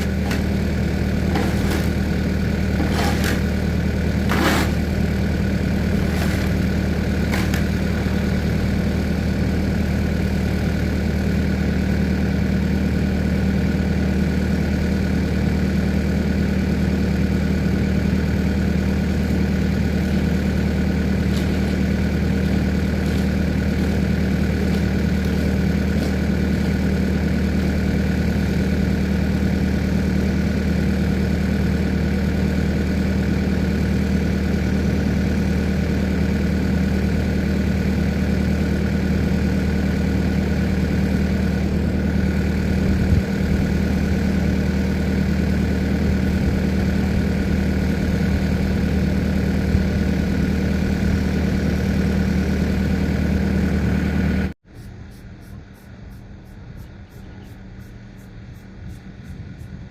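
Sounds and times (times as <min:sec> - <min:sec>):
diesel engine running: 0:00.0 - 0:59.9.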